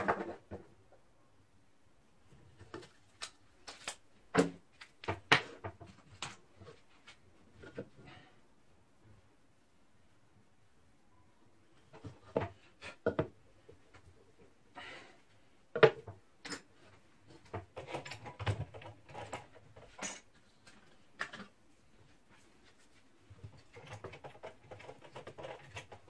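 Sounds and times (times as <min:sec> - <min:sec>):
hard objects knocking and clattering: 0:00.0 - 0:00.8, 0:11.9 - 0:13.4, 0:15.7 - 0:16.7.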